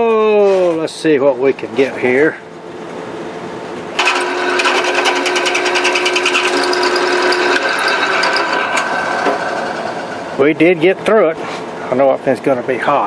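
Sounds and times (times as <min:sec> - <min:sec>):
drill bit chattering: 0:04.0 - 0:10.4
electric drill whine: 0:04.0 - 0:10.4.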